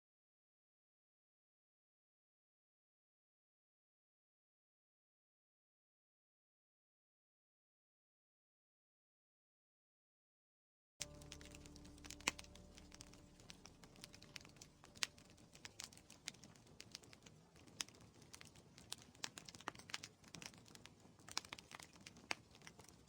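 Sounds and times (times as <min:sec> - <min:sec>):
wood fire crackling: 0:11.0 - 0:23.0.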